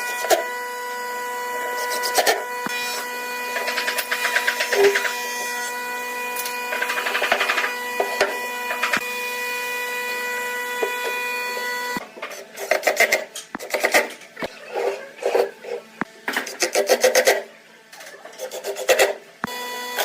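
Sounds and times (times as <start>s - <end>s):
scraping strokes on wood: 1.7s - 5.5s, 12.2s - 17.5s, 18.4s - 19.2s.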